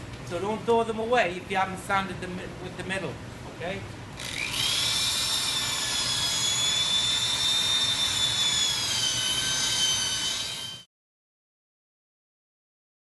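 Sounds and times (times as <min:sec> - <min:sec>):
electric drill sanding wood: 0:04.2 - 0:10.9.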